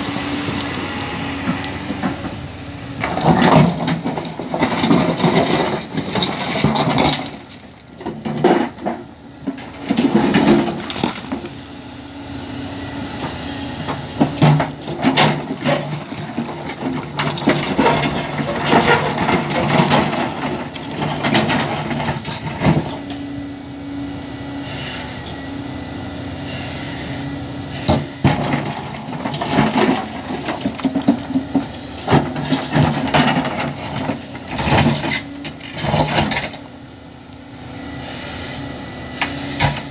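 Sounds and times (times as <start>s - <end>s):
excavator diesel engine under load: 0.0s - 39.9s
clanks and knocks: 3.0s - 11.4s, 13.9s - 22.9s, 27.9s - 36.6s.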